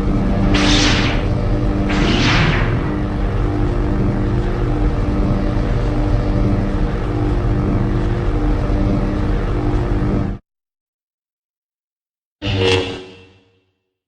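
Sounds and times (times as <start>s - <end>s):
low droning rumble: 0.0s - 10.4s.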